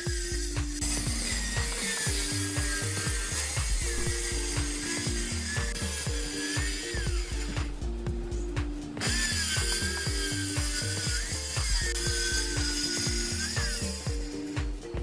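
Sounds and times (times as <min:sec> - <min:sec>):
machine whine with hiss: 0:00.0 - 0:14.9
background music with beat: 0:00.0 - 0:15.0.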